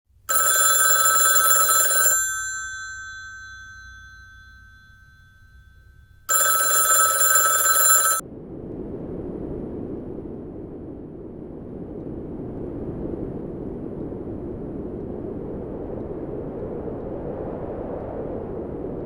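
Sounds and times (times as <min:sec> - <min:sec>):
telephone bell ringing: 0:00.3 - 0:08.2
steady rushing noise: 0:07.7 - 0:19.0.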